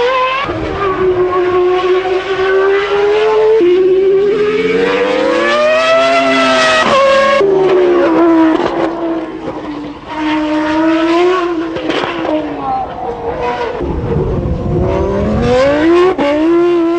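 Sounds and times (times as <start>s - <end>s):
racing engine at high revs: 0.0s - 16.9s.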